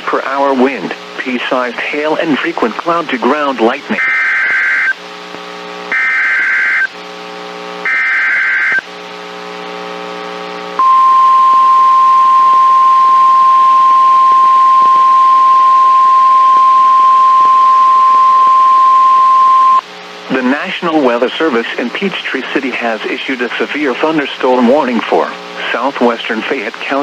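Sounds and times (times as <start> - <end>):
low buzz: 10.8 - 19.8
steady warning alarm tone: 10.8 - 19.8.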